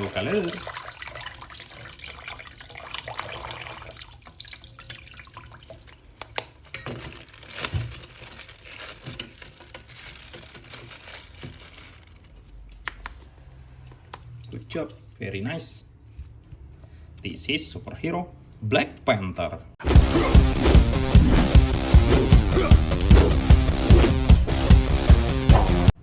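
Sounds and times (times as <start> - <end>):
water running from tap: 0.0 - 7.2
water dripping and splashing: 0.0 - 12.2, 12.9 - 15.3.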